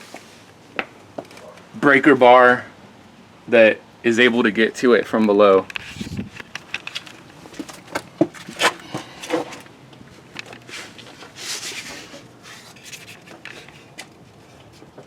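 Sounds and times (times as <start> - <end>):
scraping rustling: 5.7 - 15.0.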